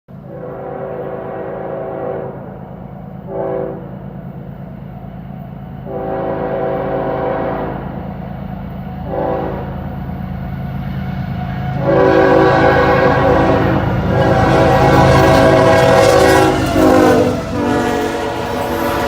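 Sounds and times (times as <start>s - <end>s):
locomotive air horn blasts: 0.2s - 2.5s, 3.3s - 3.9s, 5.9s - 8.0s, 9.0s - 9.8s, 11.5s - 19.0s
diesel engines rumbling: 8.7s - 19.0s.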